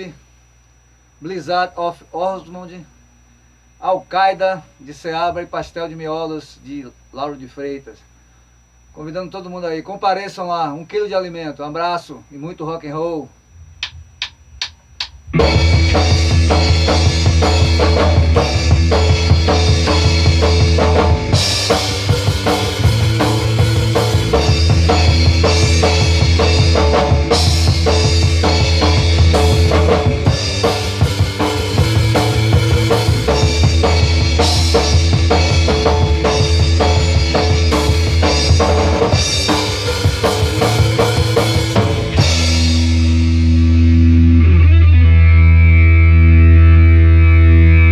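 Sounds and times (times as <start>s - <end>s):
drum kit playing: 13.8s - 44.3s
held low chord: 15.3s - 47.9s
loud rock music: 15.3s - 47.9s.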